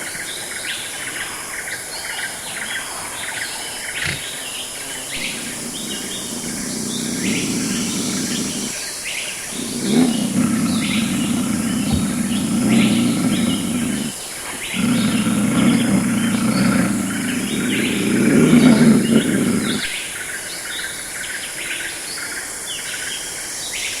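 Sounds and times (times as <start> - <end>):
birds chirping and calling: 4.0 - 4.3, 5.2 - 8.8, 9.5 - 20.0
steady high hiss: 4.1 - 19.9.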